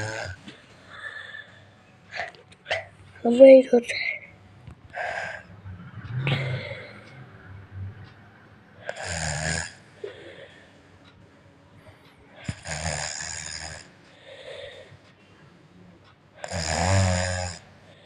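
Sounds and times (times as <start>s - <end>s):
child snoring: 0.0s - 1.4s, 8.8s - 10.5s, 12.4s - 14.9s, 16.4s - 17.7s
soft breaths: 0.0s - 9.0s, 9.7s - 12.7s, 13.6s - 17.0s, 17.6s - 18.0s.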